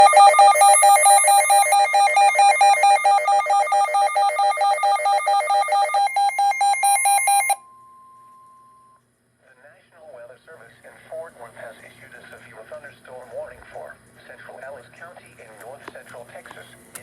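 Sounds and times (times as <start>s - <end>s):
faint steady tone: 0.0s - 9.0s.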